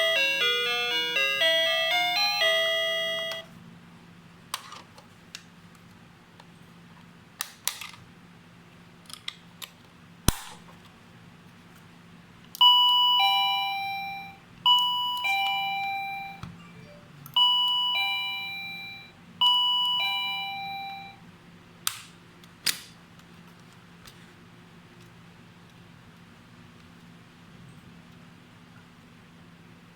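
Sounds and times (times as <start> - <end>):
doorbell two-tone ding-dong: 0.0 - 3.5, 12.6 - 21.2.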